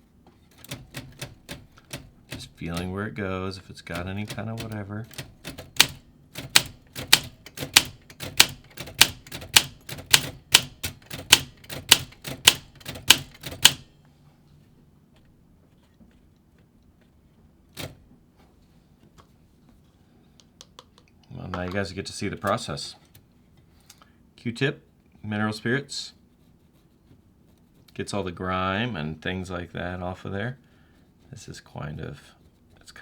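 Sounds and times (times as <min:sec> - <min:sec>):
typewriter key strikes: 0:00.6 - 0:03.0, 0:03.9 - 0:13.9.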